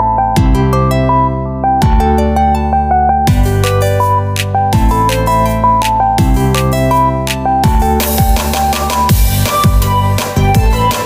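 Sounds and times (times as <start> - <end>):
heavy bass line: 0.0 - 11.0
synthesizer notes: 0.0 - 11.0
percussive hits on a beat: 3.3 - 11.0.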